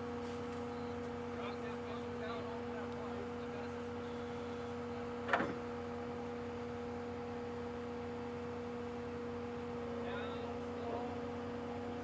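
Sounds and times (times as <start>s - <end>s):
excavator engine humming: 0.0s - 12.0s.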